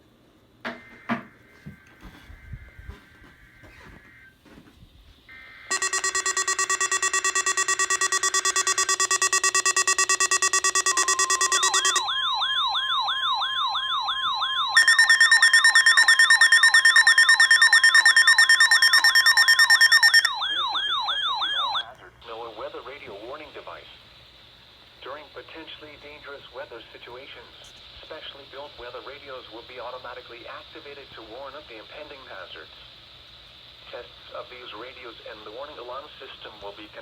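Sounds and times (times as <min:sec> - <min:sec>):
warbling siren-like alarm: 0:00.7 - 0:04.4, 0:05.3 - 0:21.9
steady warning tone: 0:00.7 - 0:04.6, 0:05.3 - 0:23.9
buzzing pulsing beep: 0:05.3 - 0:21.8.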